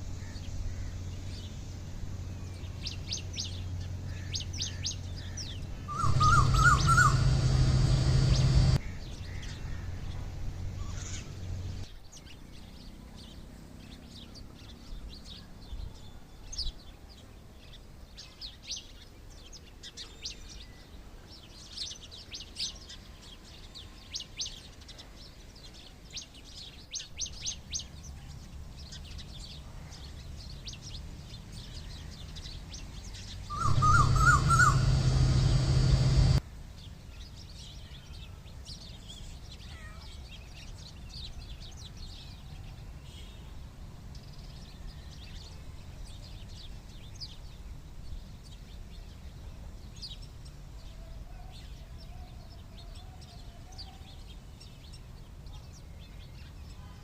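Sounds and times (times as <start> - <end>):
loud noise with low hum: 0.0 - 11.9, 33.4 - 36.4
small birds chirping: 0.0 - 57.0.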